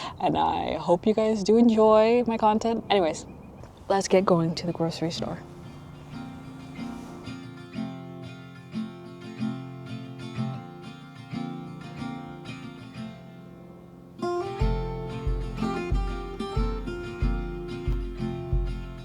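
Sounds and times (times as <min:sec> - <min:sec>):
acoustic guitar music: 0:04.2 - 0:19.0
low bass beat: 0:14.6 - 0:19.0.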